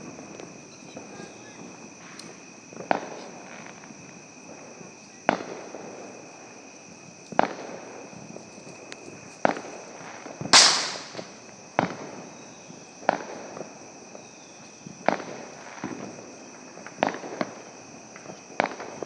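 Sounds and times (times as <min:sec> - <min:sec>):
firework hissing burst: 0:10.6 - 0:11.4
roman candle pops: 0:10.6 - 0:11.4.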